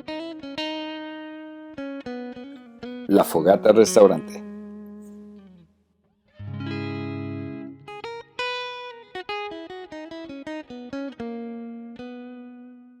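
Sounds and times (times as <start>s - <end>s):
guitar music: 0.0s - 13.0s.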